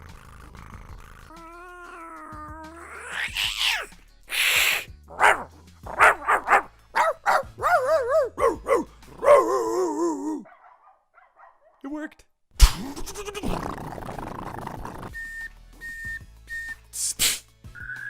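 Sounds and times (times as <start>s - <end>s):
man imitating sounds with voice: 0.0s - 6.6s, 7.4s - 10.5s, 11.8s - 15.2s
man imitating dog barks: 1.3s - 13.5s.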